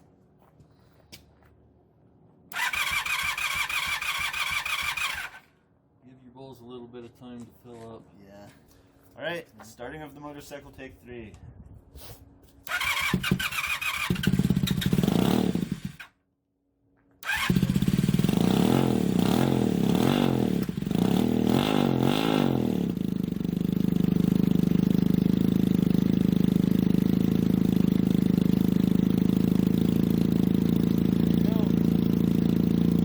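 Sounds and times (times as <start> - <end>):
motorcycle engine revving and idling: 2.5 - 5.4, 12.6 - 16.2, 17.2 - 33.0.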